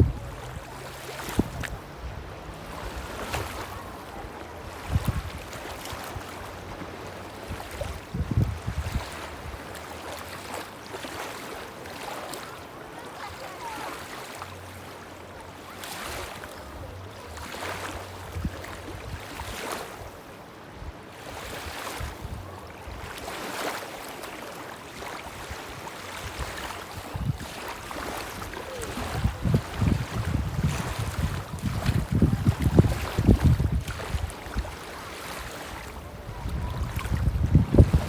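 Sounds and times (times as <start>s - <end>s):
wind gusts on microphone: 0.0s - 9.7s, 18.1s - 23.2s, 25.4s - 38.0s
waves washing onto beach: 0.0s - 38.0s.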